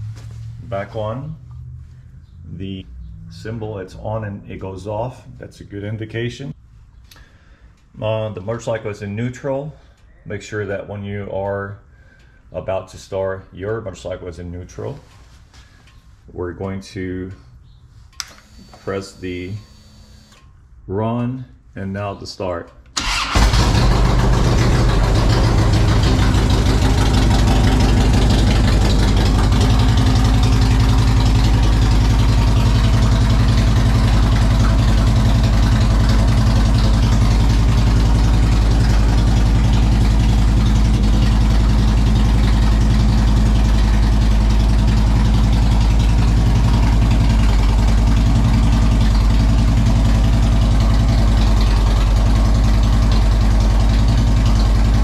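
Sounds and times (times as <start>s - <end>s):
motorcycle engine starting and idling: 22.9s - 55.0s.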